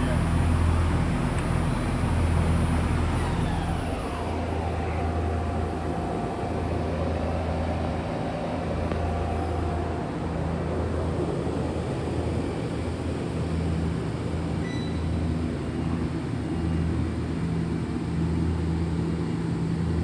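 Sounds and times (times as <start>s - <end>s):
lathe motor whine: 0.0s - 15.6s.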